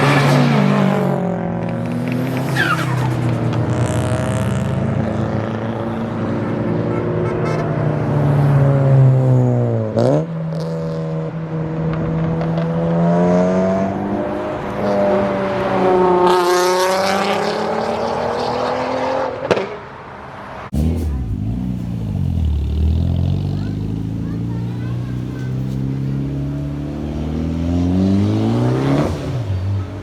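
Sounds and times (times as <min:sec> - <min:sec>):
car engine revving: 0:20.7 - 0:30.0.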